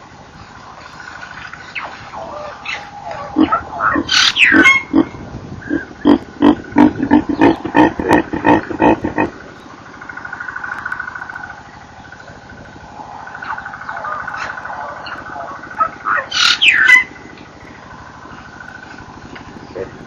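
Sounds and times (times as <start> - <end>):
baby baboon screaming: 2.2 - 9.3, 15.4 - 17.1.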